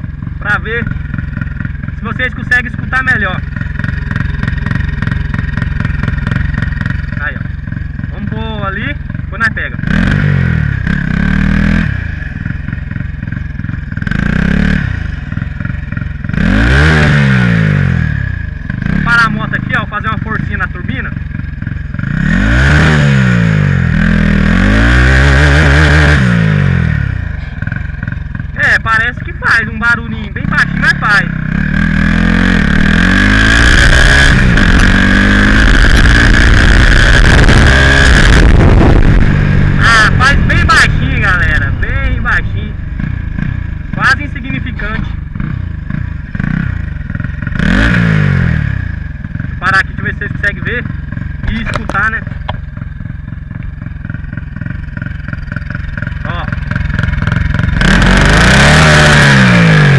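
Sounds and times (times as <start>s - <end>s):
high turbo whine: 0.0s - 59.9s
motorcycle engine revving: 0.0s - 59.9s
faint turbo flutter: 25.3s - 59.9s.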